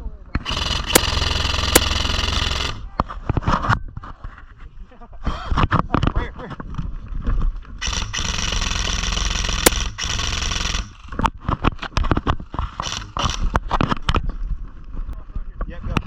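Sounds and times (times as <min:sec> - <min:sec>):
airsoft gun full-auto burst: 0:00.4 - 0:02.9, 0:07.8 - 0:11.2, 0:12.7 - 0:13.6
sharp clicks and knocks: 0:00.4 - 0:03.5, 0:07.8 - 0:14.2.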